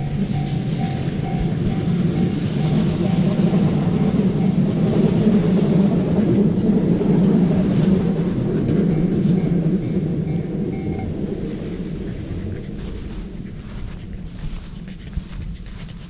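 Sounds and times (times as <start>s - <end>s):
crossing bell dinging: 0.0s - 5.2s, 8.6s - 11.4s
train rumbling past: 0.0s - 16.0s.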